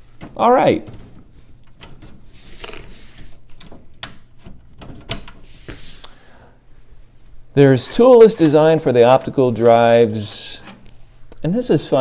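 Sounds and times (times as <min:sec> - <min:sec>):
plastic parts sliding scrapes: 0:00.9 - 0:03.5.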